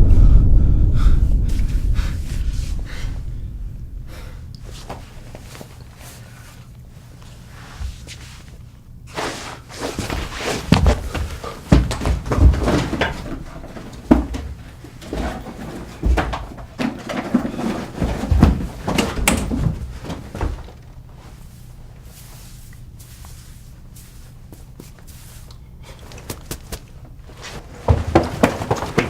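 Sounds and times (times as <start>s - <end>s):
irregular knocks and bangs: 10.1s - 20.8s.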